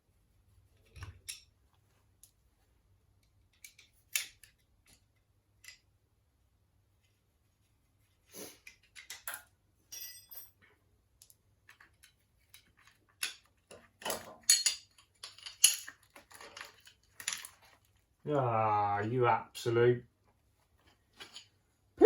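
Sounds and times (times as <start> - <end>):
metal tools clinking and knocking: 8.9 - 10.7, 11.7 - 17.8, 21.1 - 21.5.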